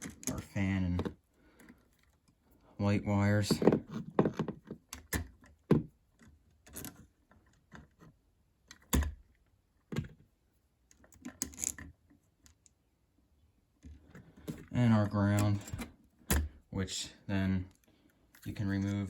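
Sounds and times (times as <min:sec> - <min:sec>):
clicks and taps handling wires: 0:00.0 - 0:02.4, 0:03.2 - 0:09.3, 0:13.8 - 0:16.7, 0:17.5 - 0:19.0.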